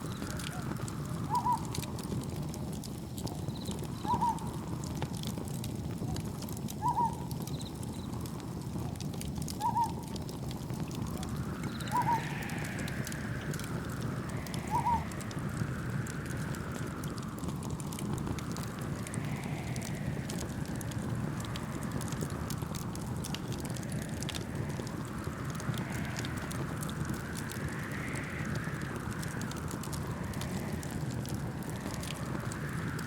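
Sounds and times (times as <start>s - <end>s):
campfire crackling: 0.0s - 33.0s
wind: 0.0s - 33.0s
low rumble: 10.7s - 33.0s.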